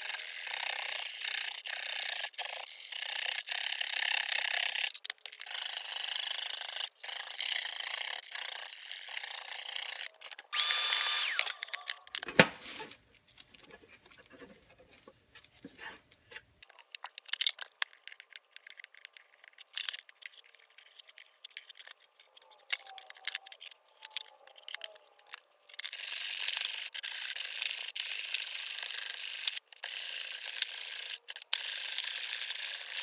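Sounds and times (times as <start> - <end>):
small power tool whining: 6.6 - 12.2.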